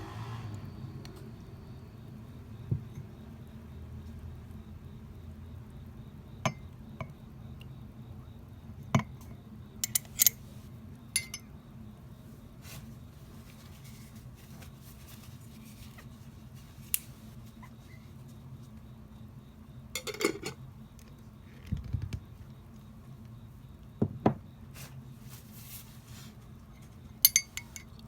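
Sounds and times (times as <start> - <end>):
steady low hum: 0.0 - 28.0
spoon clinking against glass: 11.2 - 11.5, 27.2 - 27.9.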